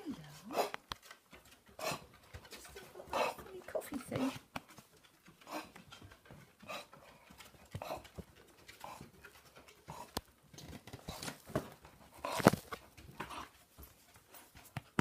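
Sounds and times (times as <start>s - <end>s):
dog breathing noisily: 5.3s - 10.2s.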